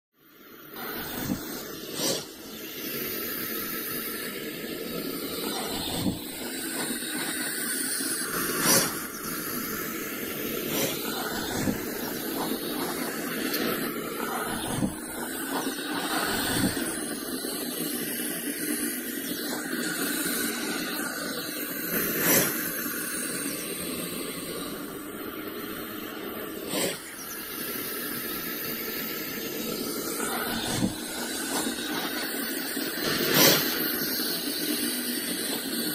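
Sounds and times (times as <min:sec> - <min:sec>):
snake hissing: 0:00.3 - 0:35.9.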